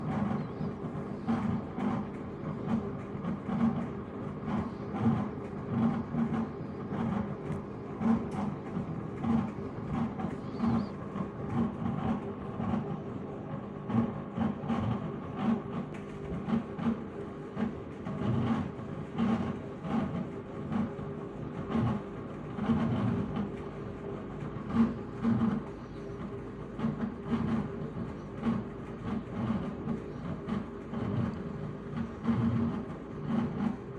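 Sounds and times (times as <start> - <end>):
washing machine motor hum: 0.0 - 33.9
irregular knocking clatter: 13.8 - 33.9.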